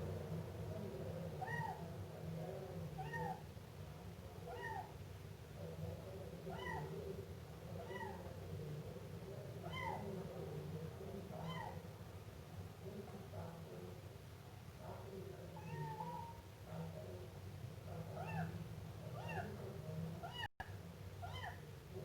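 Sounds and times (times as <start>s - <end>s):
kitten meowing: 4.5s - 4.9s, 6.5s - 6.9s, 21.2s - 21.6s.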